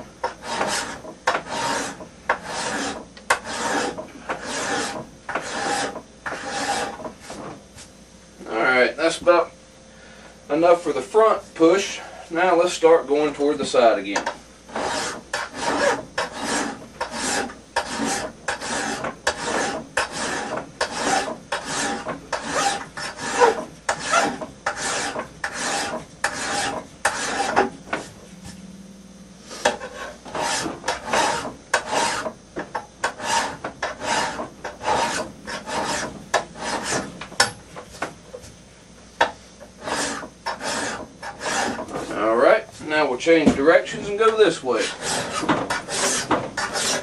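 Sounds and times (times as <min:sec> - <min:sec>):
file rasping on steel: 0:00.2 - 0:07.4, 0:14.2 - 0:28.1, 0:29.5 - 0:37.6, 0:39.2 - 0:42.2, 0:44.7 - 0:47.0.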